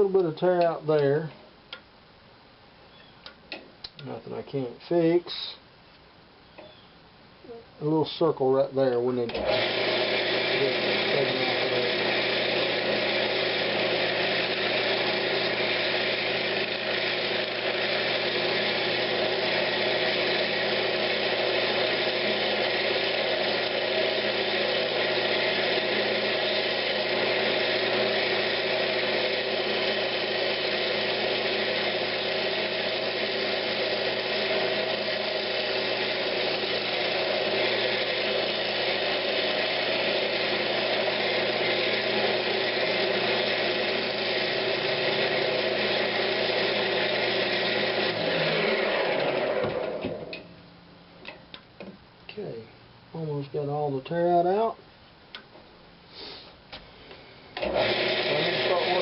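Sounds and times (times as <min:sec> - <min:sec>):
turning tool cutting wood: 0:09.0 - 0:50.4, 0:57.6 - 0:59.0
wood lathe running: 0:09.3 - 0:50.4, 0:57.6 - 0:59.0.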